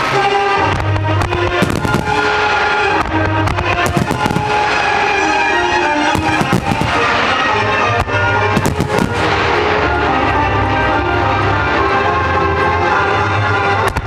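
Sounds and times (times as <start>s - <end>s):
firework shells bursting: 0.0s - 9.8s.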